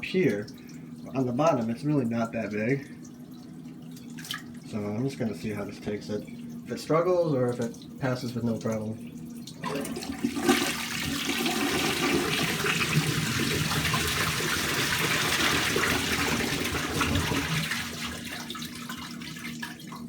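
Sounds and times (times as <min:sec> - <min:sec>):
toilet flushing: 0:00.0 - 0:20.0
toilet tank refill hiss: 0:09.6 - 0:18.8.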